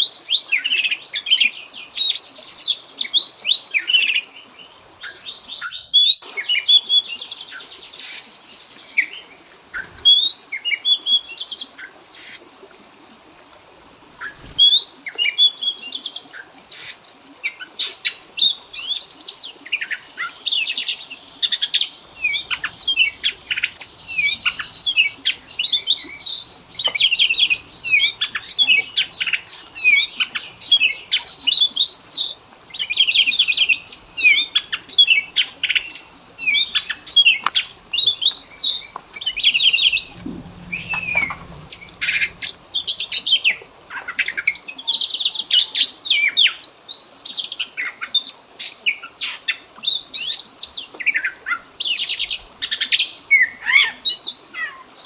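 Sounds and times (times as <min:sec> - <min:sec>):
songbird singing: 0:00.0 - 0:13.0, 0:14.1 - 0:47.0.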